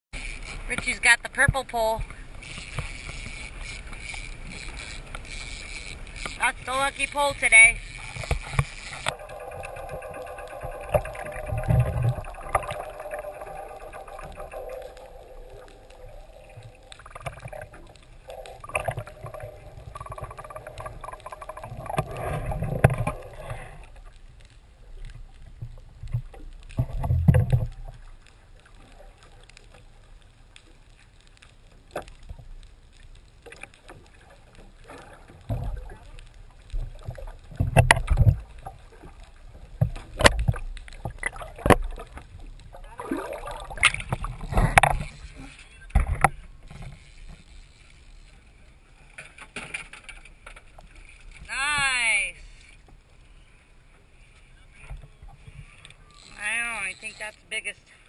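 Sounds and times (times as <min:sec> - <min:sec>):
boat motor hum: 0:00.2 - 0:23.9, 0:34.1 - 0:57.8
water thumps: 0:06.2 - 0:23.6, 0:36.7 - 0:45.2.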